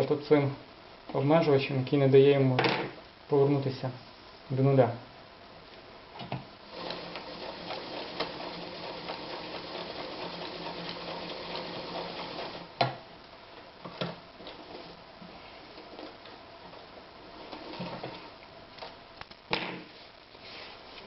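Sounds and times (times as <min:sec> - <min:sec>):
sewing machine stitching: 0:06.7 - 0:12.7, 0:16.7 - 0:18.3.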